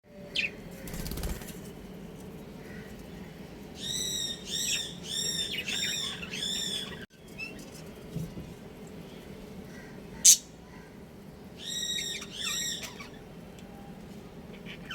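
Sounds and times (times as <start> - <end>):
wings fluttering: 0.7 - 3.1
budgerigars chirping: 3.8 - 7.0, 10.2 - 10.5, 11.6 - 13.2.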